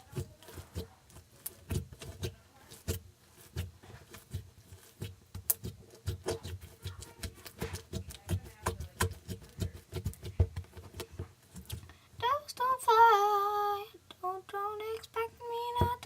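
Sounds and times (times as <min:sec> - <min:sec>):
slime squelching: 0:00.0 - 0:12.7.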